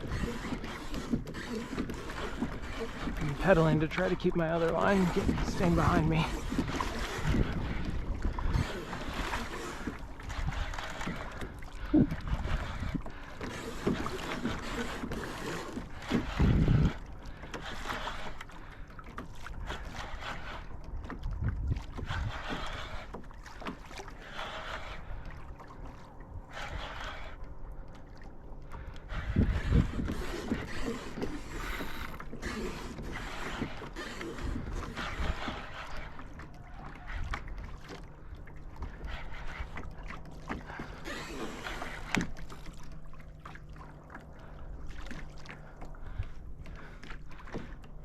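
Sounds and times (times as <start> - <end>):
water sloshing against hull: 0.0 - 48.0
wind buffeting microphone: 2.3 - 13.2, 16.1 - 17.1, 21.0 - 22.7, 29.0 - 32.3.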